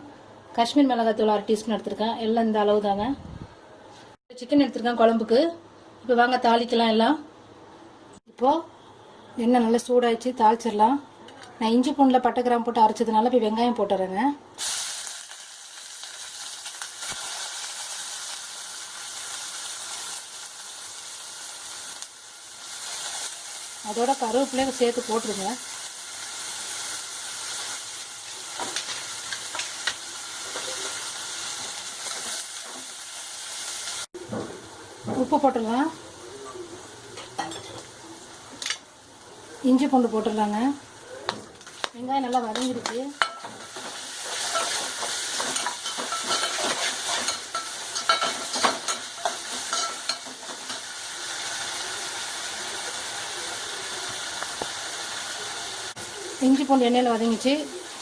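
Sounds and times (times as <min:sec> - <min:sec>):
onions sizzling in hot oil: 0:14.6 - 0:58.0
spoon stirring and clinking pan: 0:42.3 - 0:50.9.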